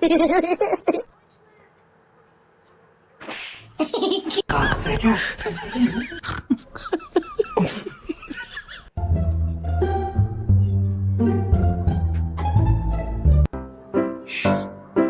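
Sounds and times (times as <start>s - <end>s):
people laughing: 3.8s - 8.9s
people talking: 4.5s - 6.4s.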